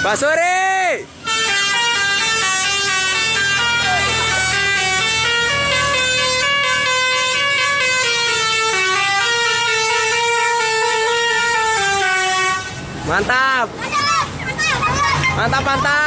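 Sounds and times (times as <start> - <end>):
musical bus horn melody: 1.2 - 12.9.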